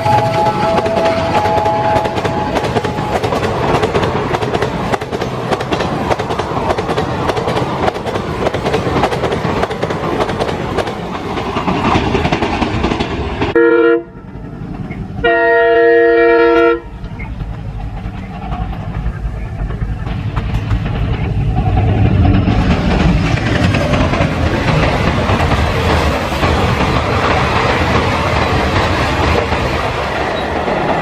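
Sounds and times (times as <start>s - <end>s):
short locomotive horn blasts: 0.0s - 2.6s, 13.6s - 14.2s, 15.2s - 16.9s
two-tone locomotive horn: 0.0s - 3.2s, 13.5s - 14.3s, 15.2s - 17.0s
train wheels clattering over rail joints: 0.1s - 13.6s, 17.0s - 31.0s.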